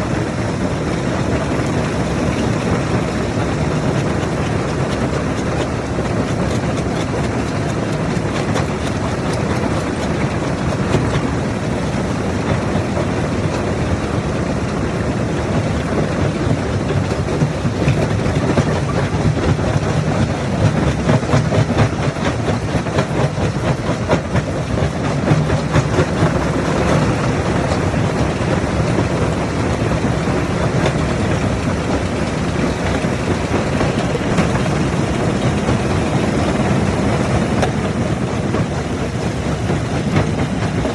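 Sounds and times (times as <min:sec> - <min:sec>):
heavy diesel machinery running: 0:00.0 - 0:40.9.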